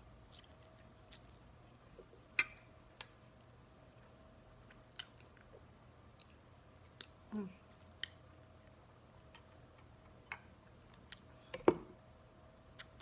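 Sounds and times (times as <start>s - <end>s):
person eating: 0.2s - 3.1s.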